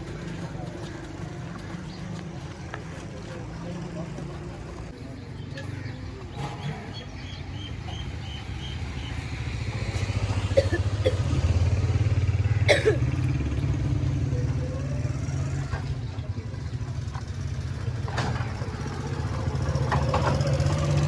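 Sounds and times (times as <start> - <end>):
small motorcycle engine running: 8.1 - 21.0.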